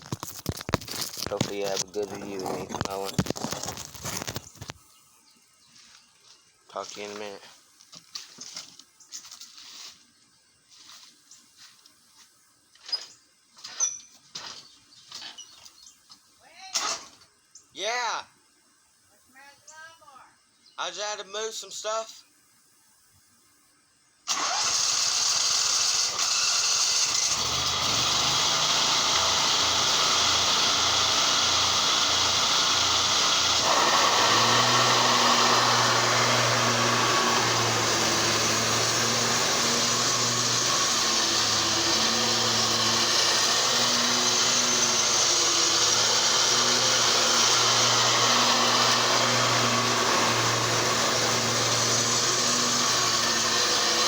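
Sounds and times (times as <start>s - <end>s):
lawn mower running: 0.0s - 4.7s, 24.3s - 54.0s.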